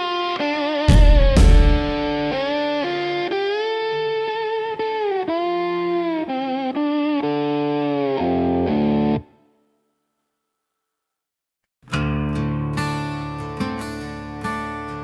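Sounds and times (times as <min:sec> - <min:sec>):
bass line: 0:00.9 - 0:02.4
guitar lead melody: 0:00.9 - 0:09.4.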